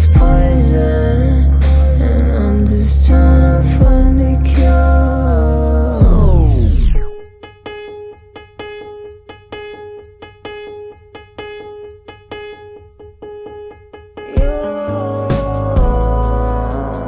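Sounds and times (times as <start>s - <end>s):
song slowing down: 0.0s - 7.2s, 14.3s - 17.0s.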